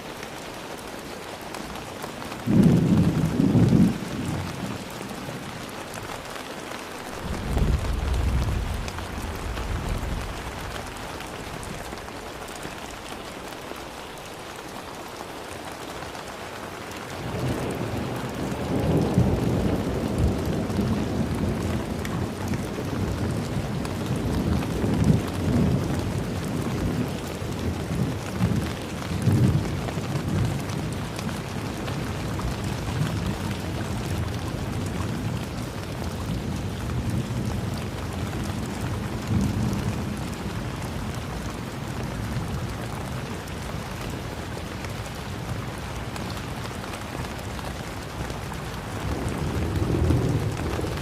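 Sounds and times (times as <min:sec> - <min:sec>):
heavy rain falling: 0:00.0 - 0:51.0
rolling thunder: 0:07.0 - 0:13.1, 0:48.2 - 0:51.0.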